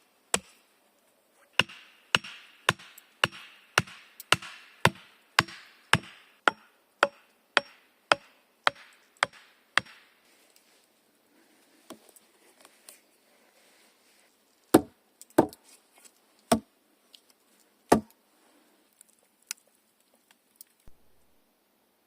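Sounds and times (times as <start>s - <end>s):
rustling: 10.2s - 14.8s, 15.6s - 21.3s
heavy wooden knocks: 14.8s - 15.6s.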